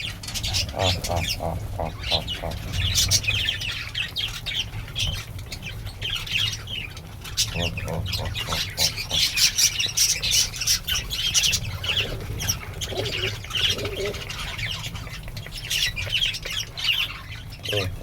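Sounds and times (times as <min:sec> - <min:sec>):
small birds chirping: 0:00.0 - 0:18.0
pigeon cooing: 0:00.3 - 0:03.6, 0:07.4 - 0:18.0.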